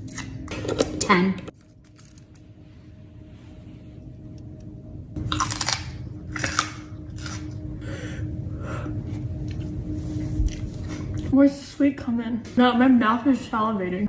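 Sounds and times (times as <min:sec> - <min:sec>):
chewing crunchy pickle: 0:05.2 - 0:07.6.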